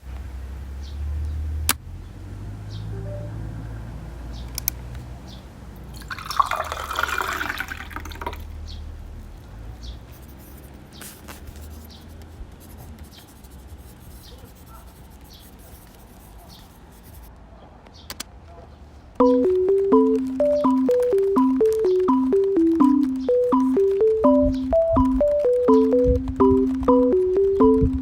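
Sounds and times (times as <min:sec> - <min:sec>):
water dripping: 0:05.9 - 0:08.6
water splashing pour: 0:06.0 - 0:08.5.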